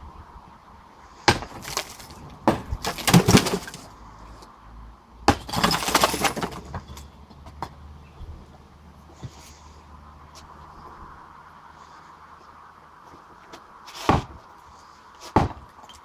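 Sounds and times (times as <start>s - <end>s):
sledgehammer striking wall: 1.3s - 3.9s, 5.3s - 6.8s
breaking pieces clattering: 1.4s - 3.9s, 5.3s - 7.0s.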